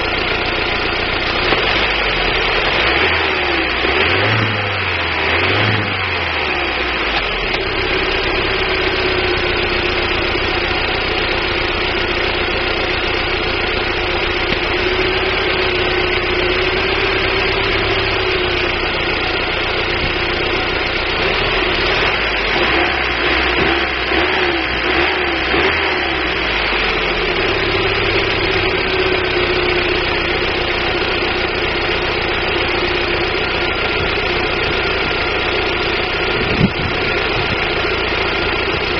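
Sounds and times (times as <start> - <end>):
car engine idling unevenly: 0.0 - 38.9.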